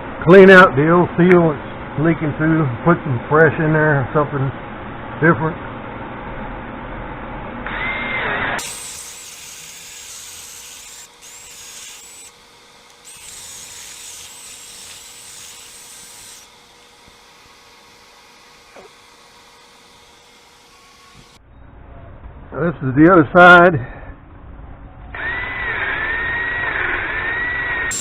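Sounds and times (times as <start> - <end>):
power drill whining: 7.7 - 21.4, 25.2 - 28.0.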